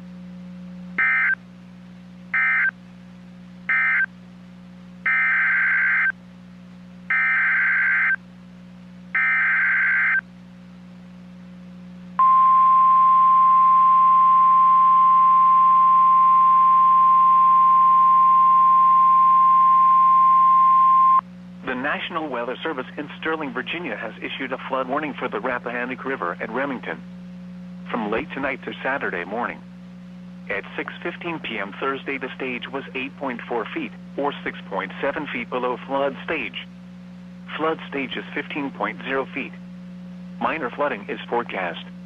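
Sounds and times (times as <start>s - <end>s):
buzzing digital data bursts: 1.0s - 1.4s, 2.4s - 2.7s, 5.1s - 6.2s, 7.1s - 8.2s, 9.2s - 10.2s
steady warning alarm tone: 1.0s - 1.4s, 2.3s - 2.8s, 3.7s - 4.1s, 5.0s - 6.2s, 7.1s - 8.2s, 9.1s - 10.2s, 12.2s - 21.2s.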